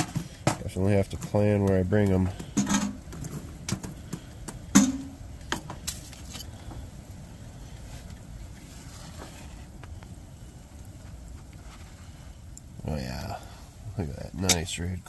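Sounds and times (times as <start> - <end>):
metal stove knocks and clanks: 2.5 - 3.0, 4.7 - 5.7.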